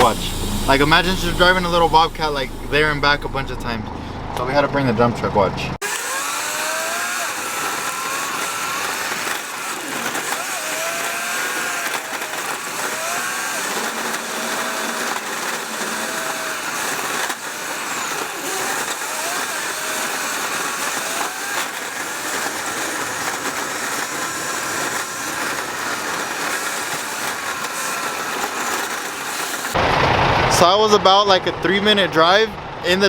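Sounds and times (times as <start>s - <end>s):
truck driving on dirt road: 0.0s - 6.4s, 15.6s - 33.0s.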